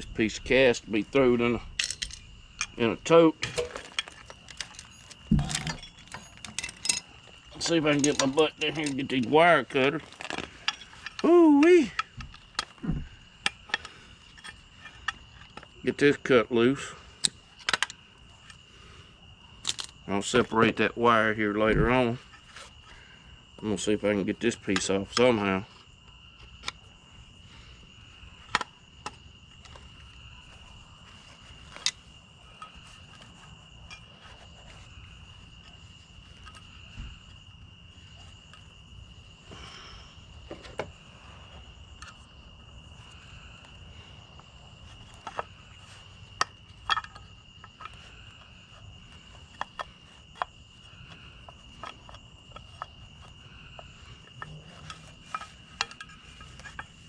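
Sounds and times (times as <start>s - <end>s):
insects droning: 0.0s - 57.0s
hand tools tapping metal: 1.8s - 12.8s.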